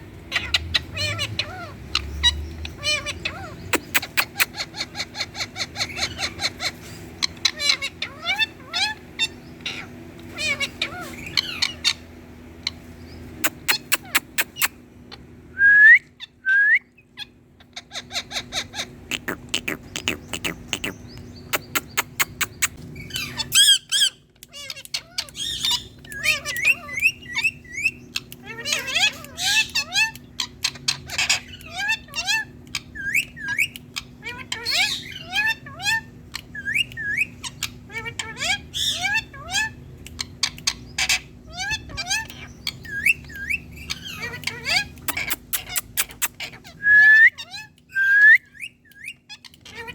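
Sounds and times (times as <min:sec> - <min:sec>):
parakeet chirping and squawking: 0:00.0 - 0:15.5, 0:16.2 - 0:16.4, 0:17.0 - 0:49.9
parakeet rising whistles: 0:45.6 - 0:48.6.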